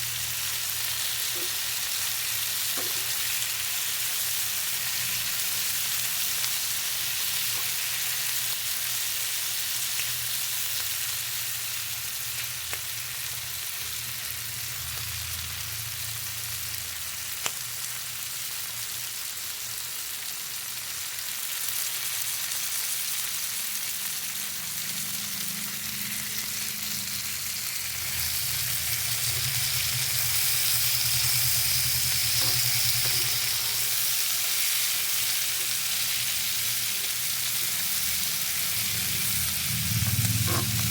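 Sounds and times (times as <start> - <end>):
food sizzling in hot oil: 0.0 - 40.9
low hum: 24.9 - 34.1, 37.3 - 40.9.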